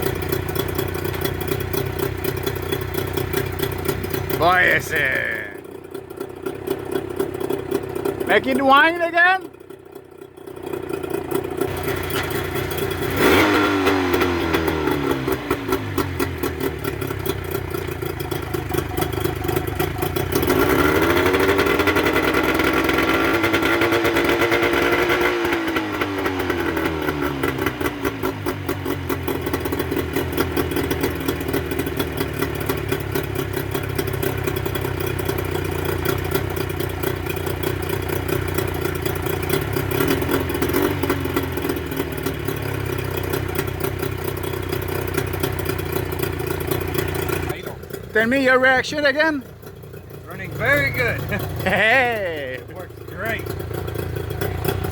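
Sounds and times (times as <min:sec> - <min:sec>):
outboard motor revving: 0:00.0 - 0:54.9.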